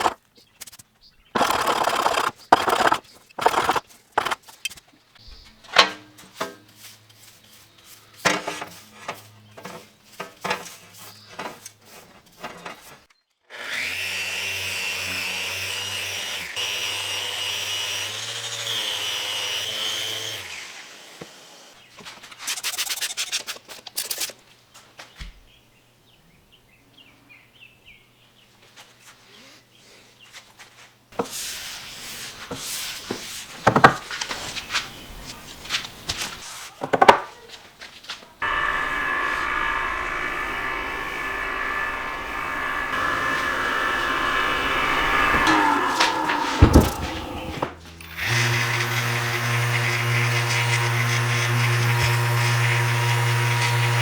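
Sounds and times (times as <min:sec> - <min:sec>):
power tool whining: 0:01.4 - 0:04.7, 0:13.6 - 0:21.7, 0:38.4 - 0:54.0
rasping strokes on wood: 0:01.4 - 0:04.7
hand tools scraping wood: 0:01.4 - 0:04.8, 0:38.4 - 0:54.0.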